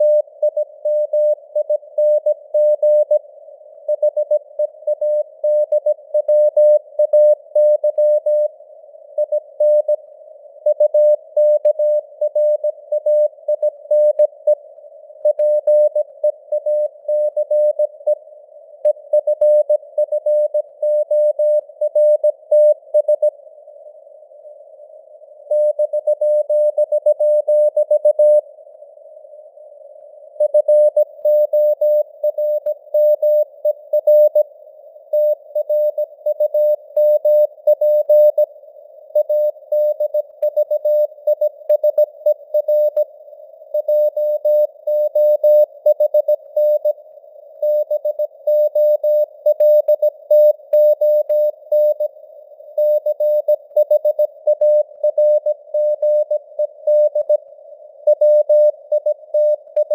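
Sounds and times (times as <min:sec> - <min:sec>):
morse code tone: 0:47.6 - 0:52.1.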